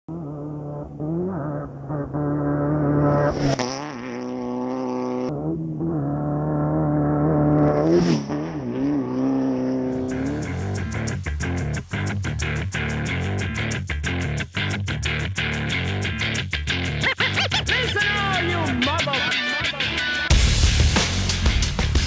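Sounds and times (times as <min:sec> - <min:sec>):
engine revving high: 0:00.1 - 0:13.8.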